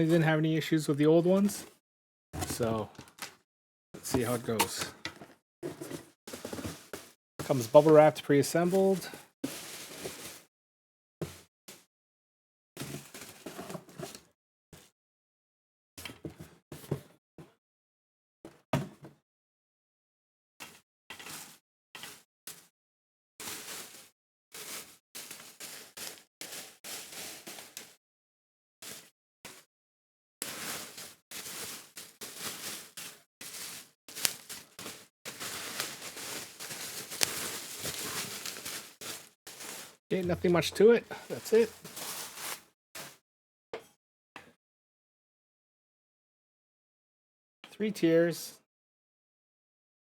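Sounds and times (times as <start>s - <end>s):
plastic wrap rustling: 4.1s - 4.9s, 30.5s - 42.6s.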